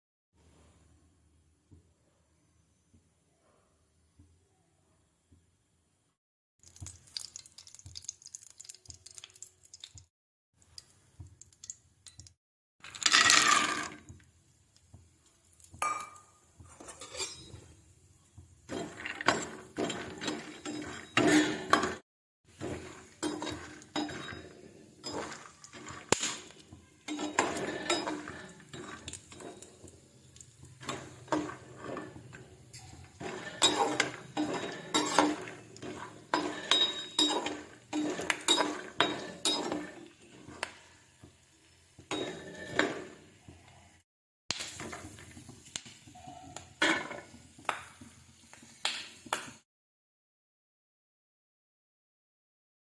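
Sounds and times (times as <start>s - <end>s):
utensils clattering in metal pans: 12.8s - 14.1s, 15.8s - 17.8s, 18.7s - 43.6s, 44.5s - 48.0s.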